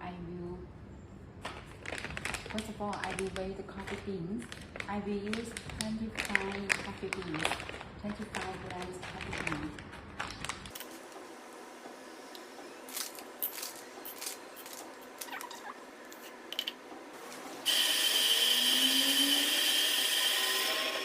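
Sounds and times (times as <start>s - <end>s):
coffee beans rattling: 12.9s - 16.8s
electric coffee grinder whining: 17.6s - 21.0s.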